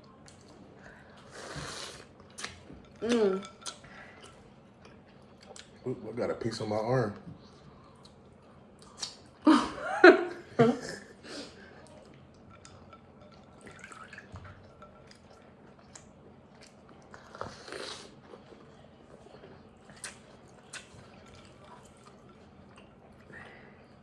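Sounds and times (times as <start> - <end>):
people chewing: 7.4 - 9.4, 11.5 - 24.0.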